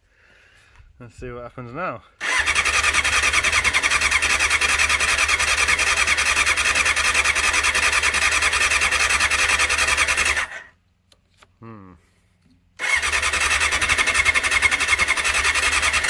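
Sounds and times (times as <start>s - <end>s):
electric starter cranking engine: 2.2s - 10.7s, 12.8s - 16.0s.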